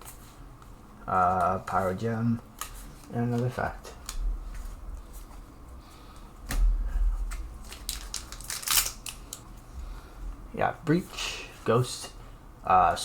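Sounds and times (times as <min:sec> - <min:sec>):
plastic wrapper crinkling and tearing: 0:07.6 - 0:09.5.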